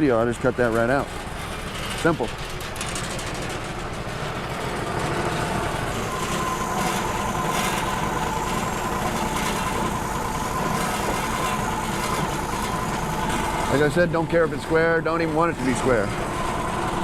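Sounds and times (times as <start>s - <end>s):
sawmill engine running: 0.0s - 17.0s
steady high tone: 4.9s - 17.0s.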